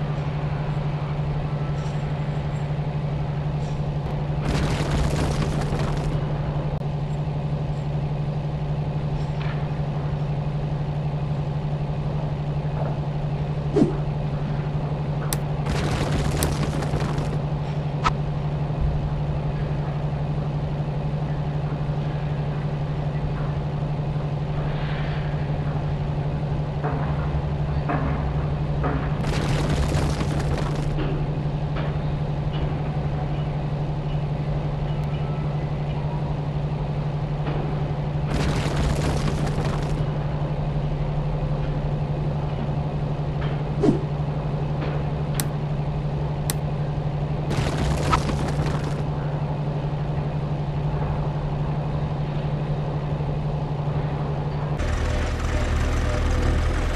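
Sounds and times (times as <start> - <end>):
motor humming: 15.3 - 18.1, 54.8 - 56.9.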